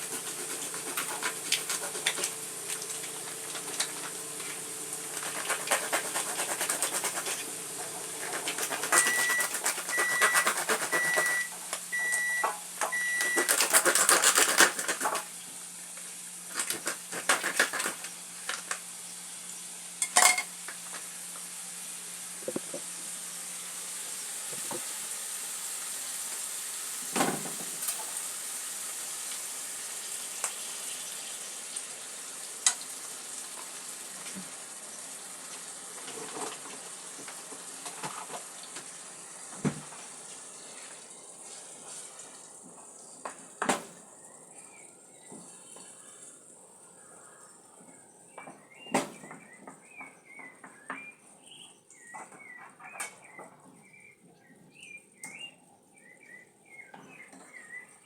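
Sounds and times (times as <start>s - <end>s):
short high appliance beeps: 8.9s - 13.6s
dishes and utensils clattering: 20.0s - 20.5s.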